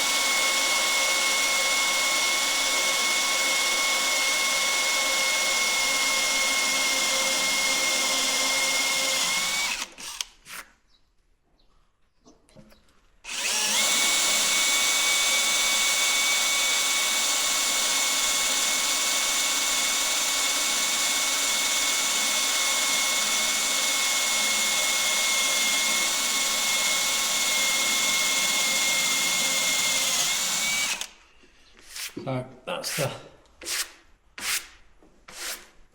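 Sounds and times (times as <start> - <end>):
electric drill whining: 0.0 - 10.4, 13.3 - 31.3.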